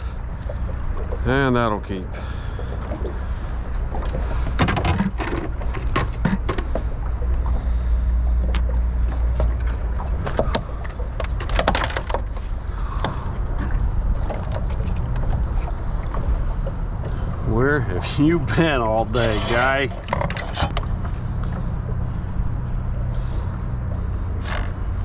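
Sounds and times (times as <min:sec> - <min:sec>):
steady low hum: 0:00.0 - 0:25.0
fishing gear clicking and rattling: 0:08.5 - 0:17.1, 0:19.1 - 0:22.0.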